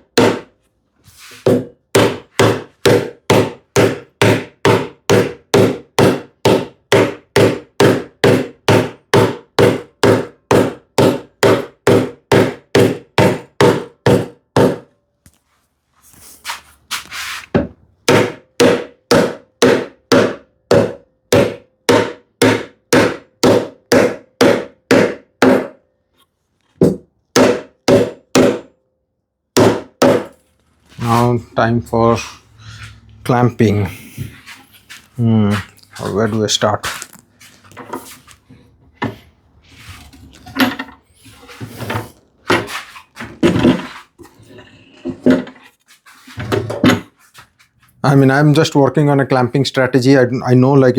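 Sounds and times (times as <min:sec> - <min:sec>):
mallet striking wood: 0:00.1 - 0:00.5, 0:01.4 - 0:14.9, 0:18.1 - 0:25.8, 0:26.8 - 0:28.8, 0:29.6 - 0:30.4
brief scrape: 0:16.1 - 0:17.5.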